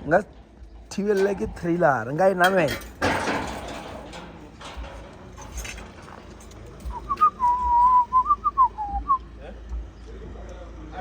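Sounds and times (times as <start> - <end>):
person whistling a tune: 7.0 - 9.2.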